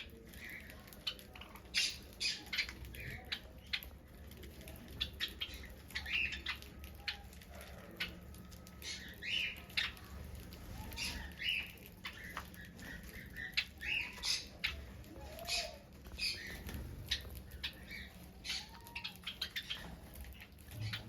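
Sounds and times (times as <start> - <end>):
finches chirping: 0.0 - 4.0, 4.8 - 21.0.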